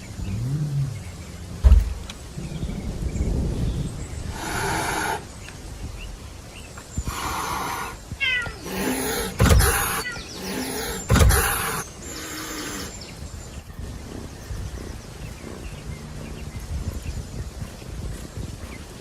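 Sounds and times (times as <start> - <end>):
heavy thumps: 1.6 - 2.3, 9.3 - 10.0
cats hissing: 4.3 - 5.3, 7.0 - 13.2
cat meowing: 8.2 - 10.4.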